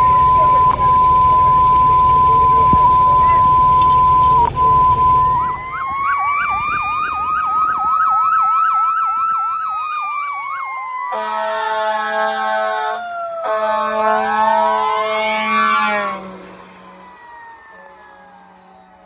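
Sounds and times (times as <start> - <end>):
siren yelp and wail: 0.0 - 19.0
air horn blasts: 11.1 - 18.8.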